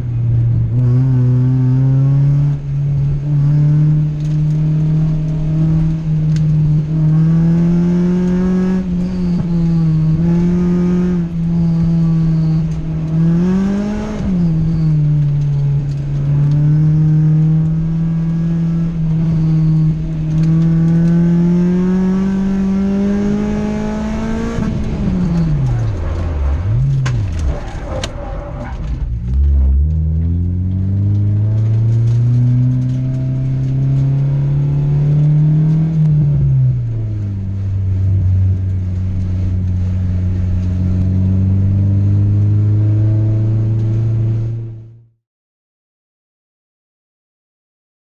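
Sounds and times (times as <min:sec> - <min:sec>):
car engine revving: 0:00.0 - 0:45.0.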